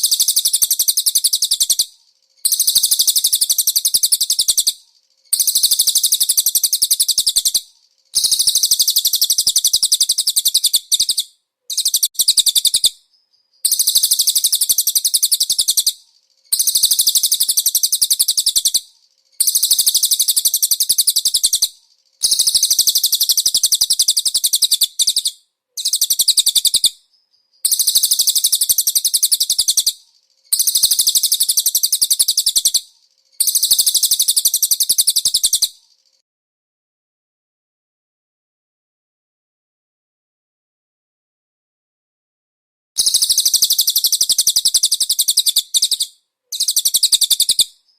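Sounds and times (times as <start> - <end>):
bird chattering trills: 0.0 - 1.9, 8.2 - 12.9, 13.6 - 18.8, 19.4 - 26.9, 27.6 - 32.8, 33.4 - 35.7, 43.0 - 47.6.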